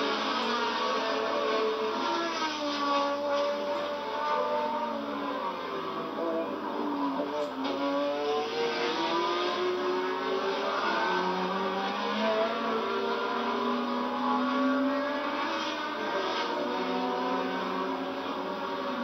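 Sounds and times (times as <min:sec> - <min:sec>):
race car engines passing: 0:00.0 - 0:19.0.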